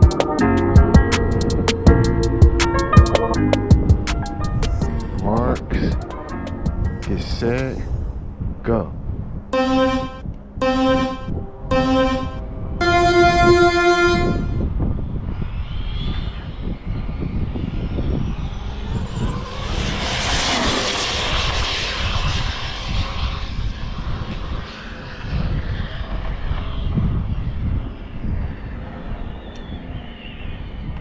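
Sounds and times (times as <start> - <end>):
held tone: 9.6 - 14.7
wind rumbling on microphone: 14.5 - 31.0.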